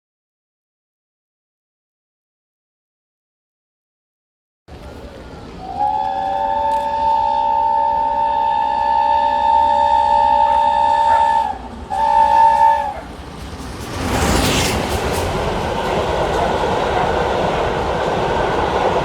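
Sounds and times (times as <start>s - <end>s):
low rumble of train: 4.7s - 19.0s
steam locomotive chime whistle: 5.6s - 13.0s.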